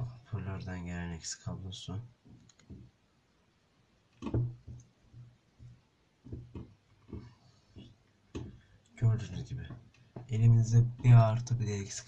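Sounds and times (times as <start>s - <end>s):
cable knocks and clicks: 2.2s - 2.9s, 4.2s - 8.6s.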